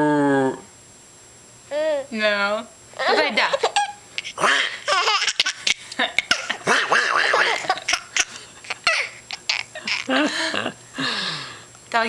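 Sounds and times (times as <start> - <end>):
baby laughing: 3.0 - 10.2.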